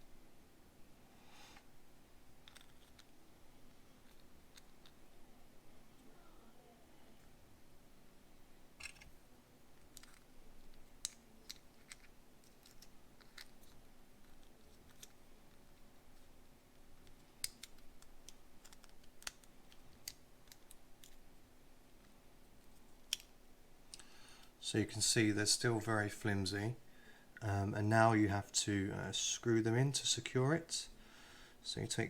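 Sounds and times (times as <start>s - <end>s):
plastic model parts clicking: 8.8s - 9.1s, 9.9s - 15.2s, 17.1s - 21.2s, 23.1s - 23.3s.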